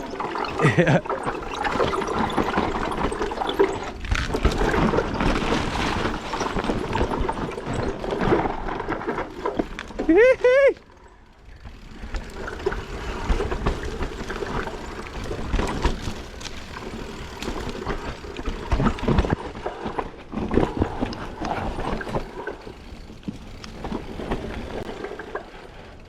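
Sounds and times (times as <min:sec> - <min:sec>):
tyres rolling over dirt and rocks: 0:00.0 - 0:26.0
bike chain clattering: 0:09.2 - 0:18.7.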